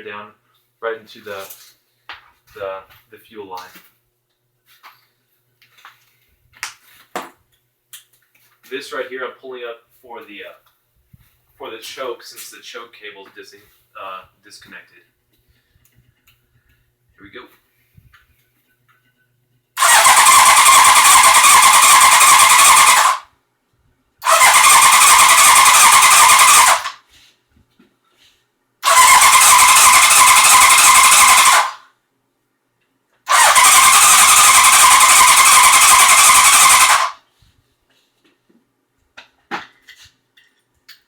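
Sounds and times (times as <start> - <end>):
starter cranking engine: 19.8 - 23.2, 24.2 - 27.0, 28.8 - 31.8, 33.3 - 37.2.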